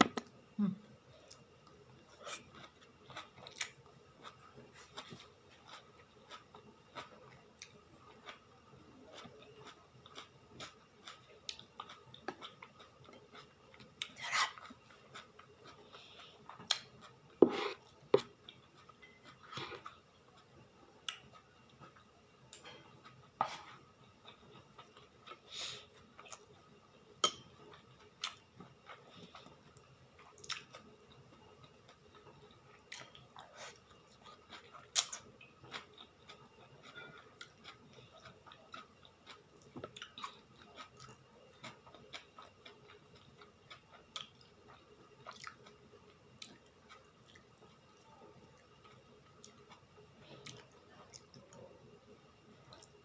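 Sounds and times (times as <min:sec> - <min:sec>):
chewing: 0:27.3 - 0:51.7.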